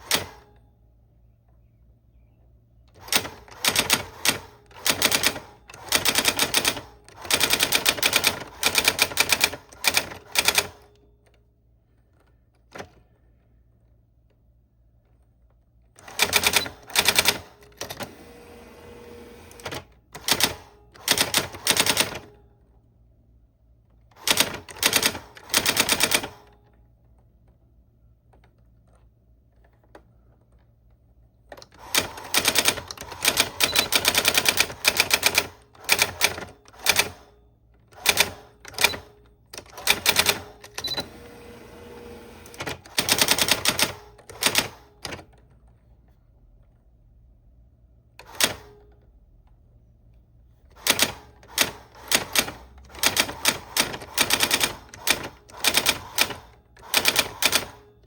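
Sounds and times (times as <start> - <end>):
typewriter rasping: 3.0 - 10.8, 16.0 - 18.2, 18.8 - 22.3, 24.2 - 26.5, 31.6 - 37.3, 37.9 - 41.5, 42.2 - 45.3, 50.7 - 57.9
typewriter keys clattering: 42.5 - 45.6, 50.8 - 57.8.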